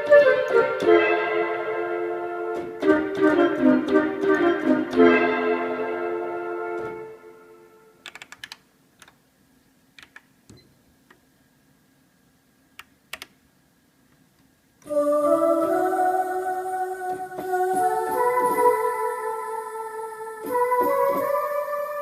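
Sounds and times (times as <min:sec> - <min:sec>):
synthesizer held notes stepping upward: 0:00.0 - 0:07.9, 0:14.9 - 0:22.0
synthesizer organ chord: 0:00.0 - 0:08.0, 0:14.8 - 0:22.0.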